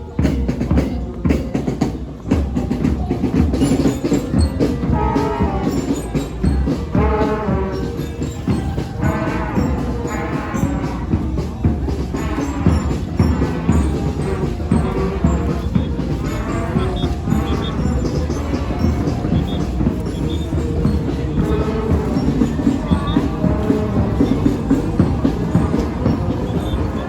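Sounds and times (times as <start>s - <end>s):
loud music with drum beat: 0.0s - 27.0s
horn-like sound: 4.8s - 6.0s.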